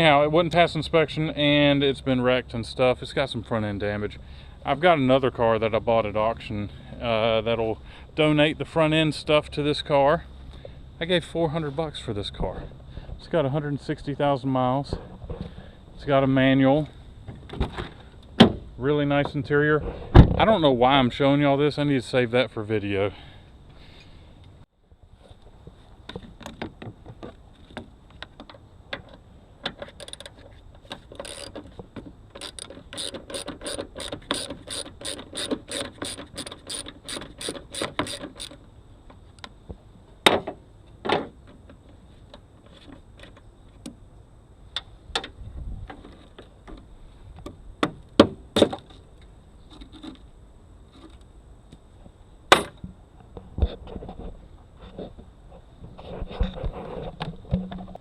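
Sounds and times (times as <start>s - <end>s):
socket ratchet clicking: 29.9s - 30.3s, 31.1s - 31.6s, 32.4s - 38.6s.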